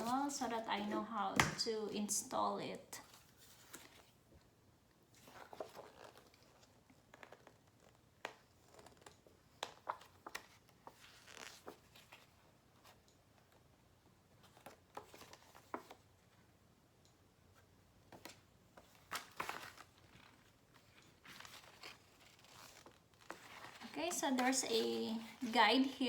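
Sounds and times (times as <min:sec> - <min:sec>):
paper and packaging rustling: 0:00.0 - 0:01.1, 0:18.2 - 0:26.0.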